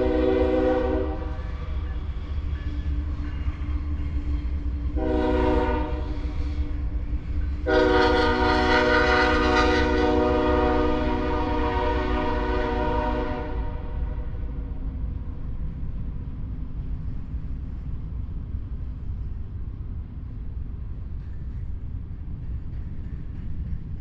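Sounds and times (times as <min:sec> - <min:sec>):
horn blasts: 0:00.0 - 0:01.4, 0:05.0 - 0:06.2, 0:07.7 - 0:14.2.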